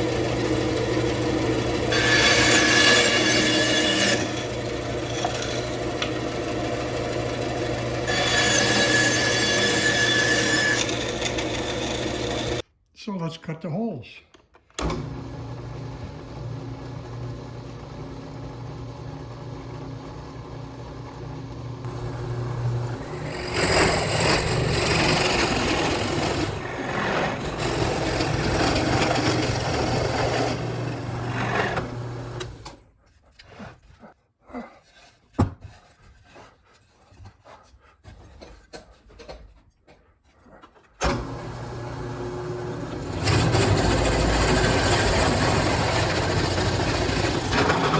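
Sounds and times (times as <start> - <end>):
drill bit boring into wood: 0.0 - 12.6, 21.9 - 32.6, 41.2 - 47.9
power drill motor: 0.0 - 12.6, 21.3 - 32.8, 41.1 - 47.9.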